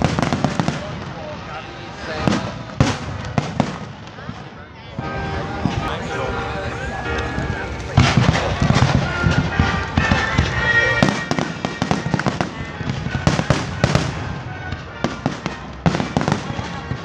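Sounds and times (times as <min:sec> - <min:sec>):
fireworks bangs and crackles: 0:00.0 - 0:17.0
music: 0:05.0 - 0:17.0.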